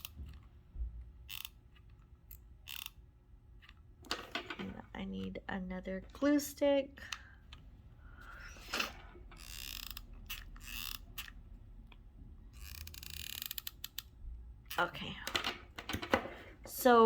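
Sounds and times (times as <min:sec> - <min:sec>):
glue gun ratcheting clicks: 0:01.2 - 0:01.6, 0:02.3 - 0:03.0, 0:09.4 - 0:12.0, 0:12.6 - 0:14.9.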